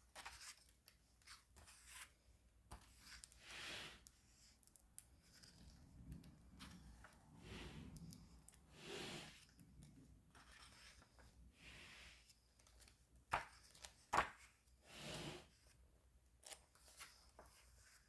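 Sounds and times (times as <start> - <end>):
book pages turning: 12.2 - 14.6.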